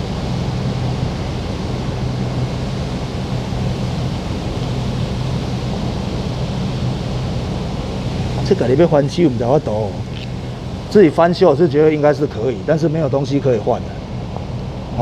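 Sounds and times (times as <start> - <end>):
machine humming and rushing: 0.0 - 15.0.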